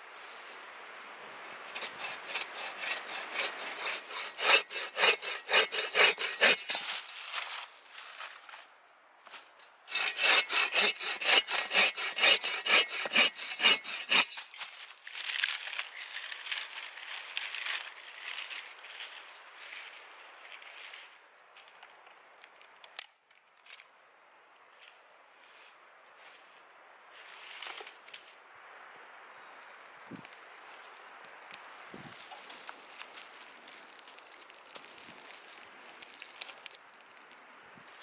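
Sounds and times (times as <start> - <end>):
soft scraping: 1.4 - 8.6
hand saw cutting wood: 1.5 - 7.4, 9.9 - 14.8.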